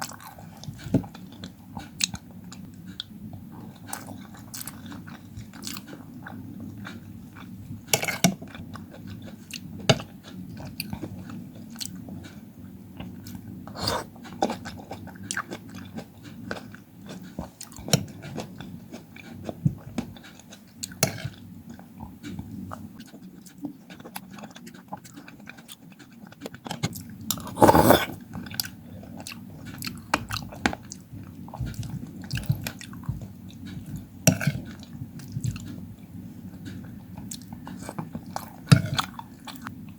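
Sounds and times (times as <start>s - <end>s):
wet chewing: 23.9s - 31.0s.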